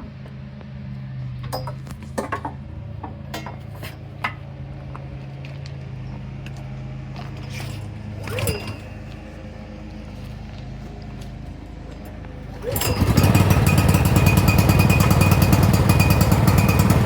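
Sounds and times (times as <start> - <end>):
recoil starter cord pull: 8.2 - 8.9, 12.6 - 17.0.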